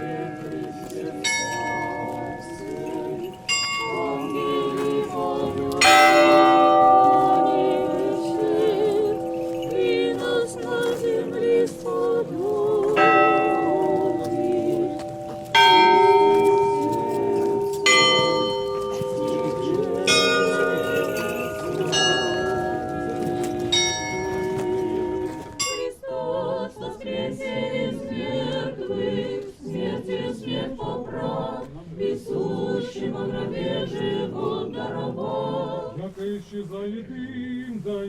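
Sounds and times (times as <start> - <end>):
church bells pealing: 0.0 - 25.9
crowd singing: 0.0 - 38.0.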